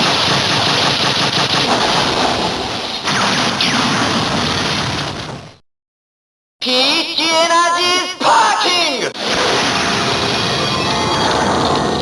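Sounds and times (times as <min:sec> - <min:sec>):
dense crackling barrage: 0:00.0 - 0:05.6, 0:09.2 - 0:12.0.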